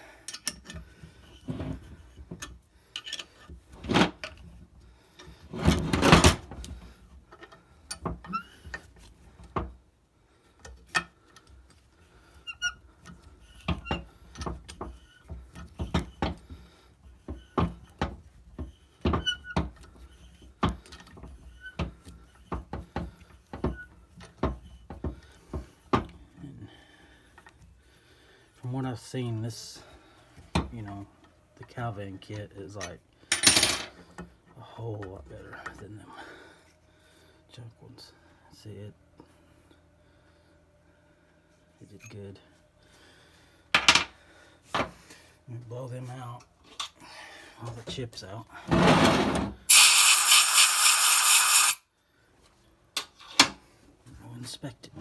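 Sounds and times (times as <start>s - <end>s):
ratchet clicking: 49.7s - 51.8s.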